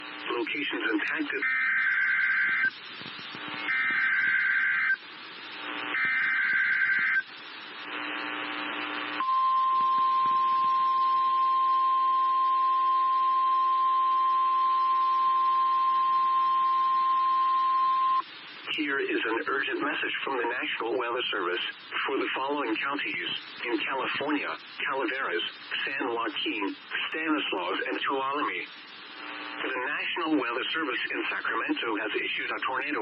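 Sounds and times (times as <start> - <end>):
radio hiss: 0.0 - 9.3, 17.9 - 33.0
steady warning alarm tone: 3.6 - 5.0, 5.9 - 7.3.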